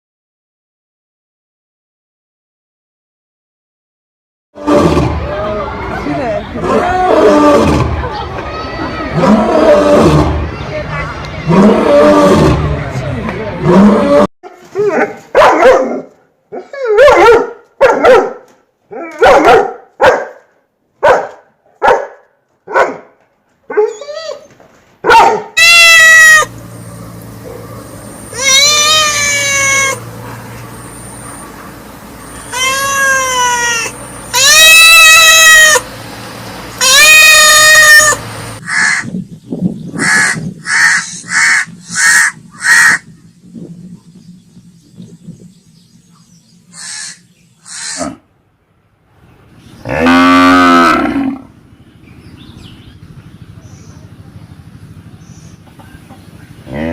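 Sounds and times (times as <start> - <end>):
dog barking: 15.0 - 24.0, 25.0 - 25.6
long animal cries: 25.6 - 26.5, 28.3 - 30.1, 32.4 - 35.8, 36.8 - 39.1, 46.8 - 48.2.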